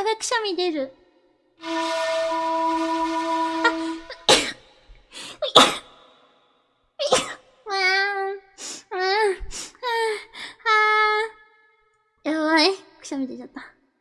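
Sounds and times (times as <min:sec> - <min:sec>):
held vocal note: 0:01.6 - 0:04.6
woman sneezing: 0:04.3 - 0:04.6, 0:05.3 - 0:06.0, 0:07.0 - 0:07.4.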